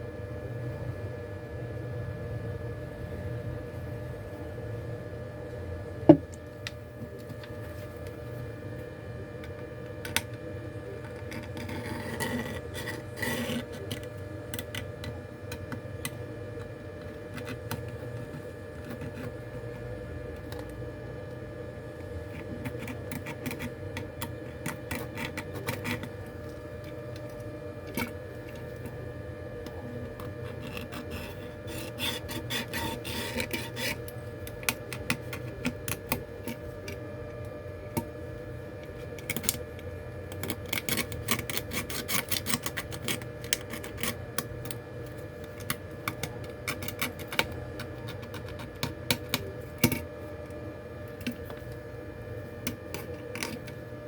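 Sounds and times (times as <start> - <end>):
steady hum: 0.0 - 54.0
tools scraping on phone: 9.4 - 20.7, 22.0 - 37.2, 37.9 - 50.2, 52.5 - 54.0.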